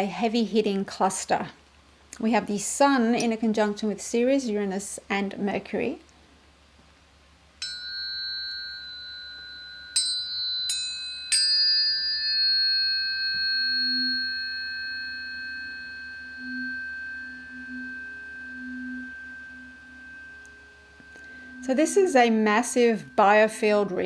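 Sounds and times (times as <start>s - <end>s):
tuning forks struck and ringing: 7.6s - 24.0s
wavering lower tone: 7.6s - 24.0s.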